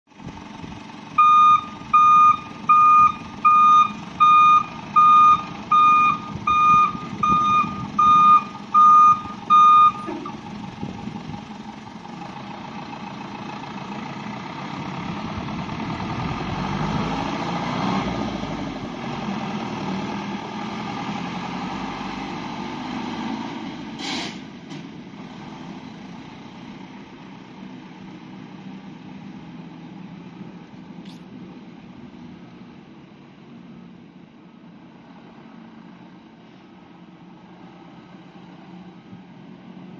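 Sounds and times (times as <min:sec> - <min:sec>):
truck engine running: 0:00.1 - 0:23.9
truck reversing alarm beeping: 0:01.2 - 0:10.4.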